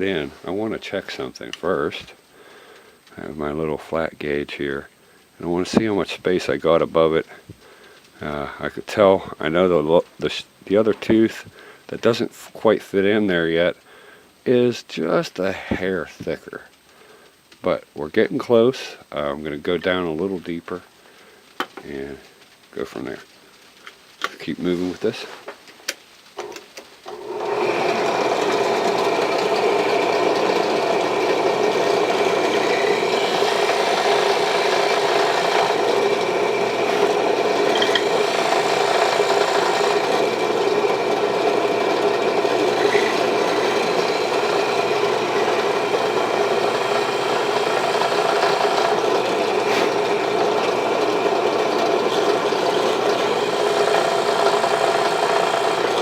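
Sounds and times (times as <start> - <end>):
electric drill cutting wood: 26.4 - 56.0.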